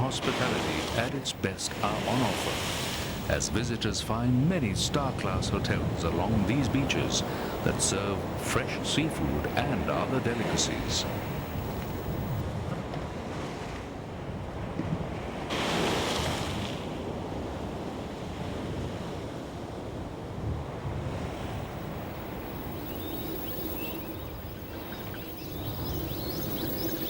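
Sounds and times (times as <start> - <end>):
wave breaking: 0.0 - 12.4, 20.4 - 27.0
ocean surf washing onto beach: 0.0 - 27.0.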